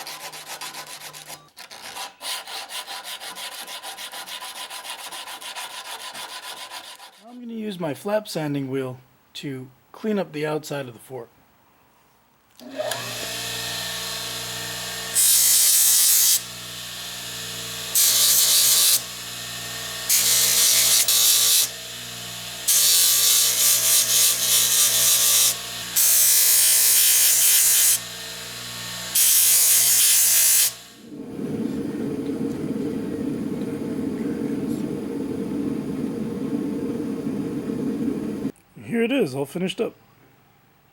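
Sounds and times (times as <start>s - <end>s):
power tool motor whine: 12.6s - 31.2s
abrasive hiss of metal sanding: 15.2s - 16.5s, 17.9s - 19.1s, 20.1s - 21.8s, 22.6s - 28.0s, 29.1s - 31.0s.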